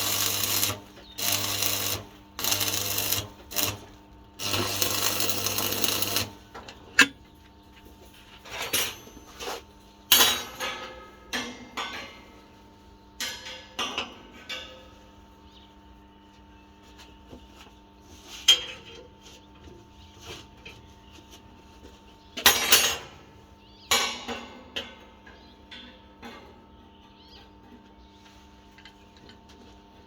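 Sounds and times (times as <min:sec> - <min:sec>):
harsh buzzing of workshop tool: 0:00.0 - 0:06.5
steel pieces clanking: 0:04.4 - 0:06.4.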